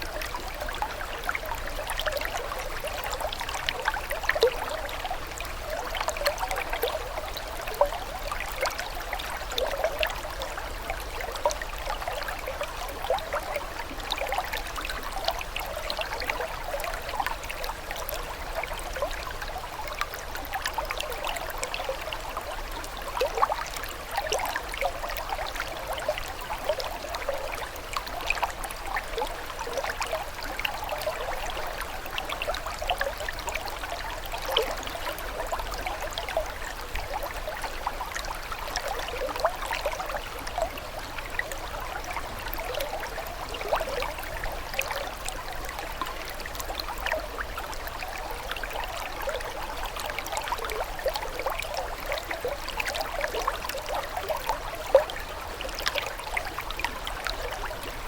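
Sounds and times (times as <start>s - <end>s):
water trickling and bubbling: 0.0s - 58.0s.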